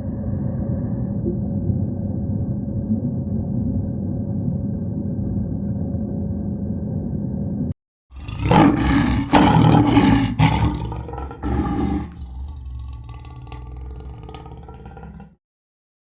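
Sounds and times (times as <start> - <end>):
large animal roaring: 8.2 - 15.3.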